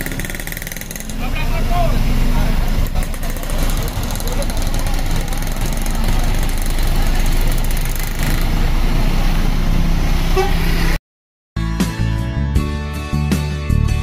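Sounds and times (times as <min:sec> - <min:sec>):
bus diesel engine running: 0:00.0 - 0:11.0
bus horn: 0:10.3 - 0:10.9.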